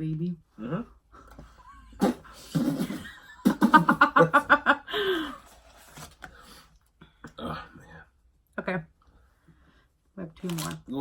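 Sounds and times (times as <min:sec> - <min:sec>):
person laughing: 0:01.5 - 0:05.4.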